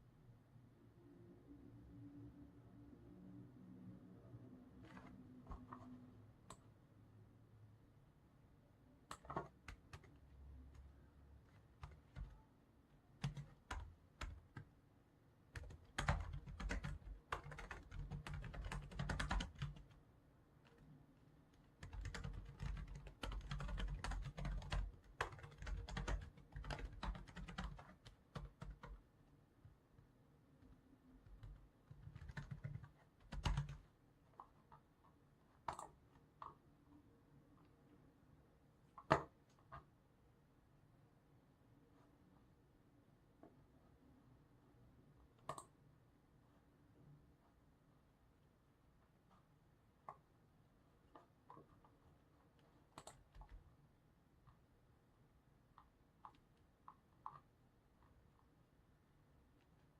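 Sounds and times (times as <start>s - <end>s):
computer keyboard typing: 9.1s - 10.9s, 11.5s - 12.4s, 13.2s - 14.7s, 15.5s - 20.0s, 21.6s - 29.0s, 31.2s - 34.9s, 35.6s - 36.6s, 45.4s - 45.7s, 52.9s - 53.6s.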